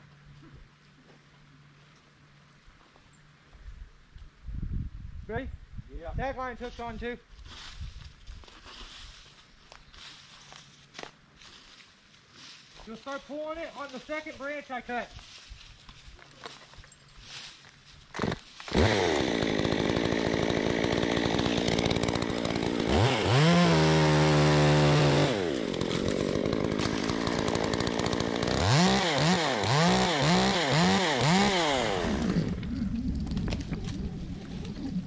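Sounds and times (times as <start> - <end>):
chainsaw revving: 18.2 - 34.8.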